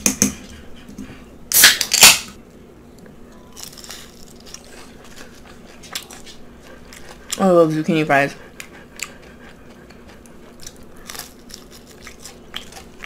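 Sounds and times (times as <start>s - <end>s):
quiet chewing: 2.9s - 13.0s
crisp crunches of biting: 3.5s - 5.2s, 10.6s - 13.0s.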